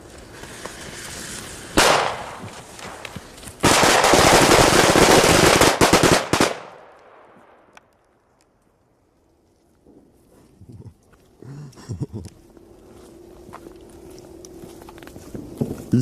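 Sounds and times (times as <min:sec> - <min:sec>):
firecrackers hissing and crackling: 0:00.0 - 0:06.6.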